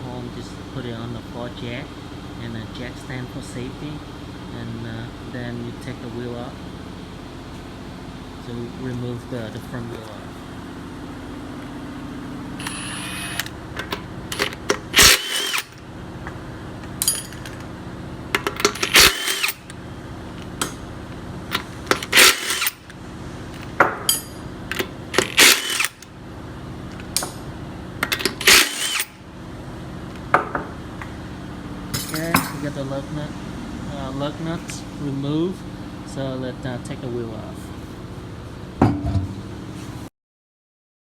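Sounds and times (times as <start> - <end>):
steady low hum: 0.0 - 40.1
impact wrench bursts: 12.6 - 15.8, 18.4 - 19.8, 21.5 - 23.0, 23.6 - 26.1, 28.0 - 29.3.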